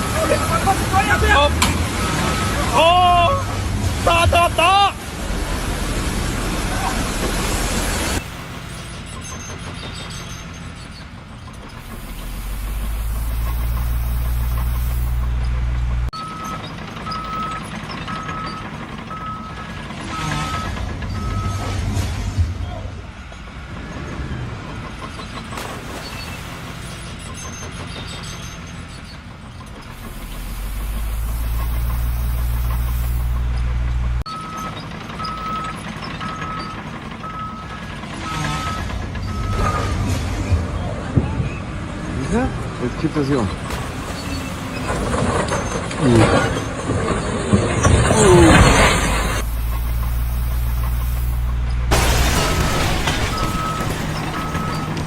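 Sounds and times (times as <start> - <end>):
heavy machine engine humming: 5.0 - 22.0, 28.5 - 42.1, 43.9 - 55.0.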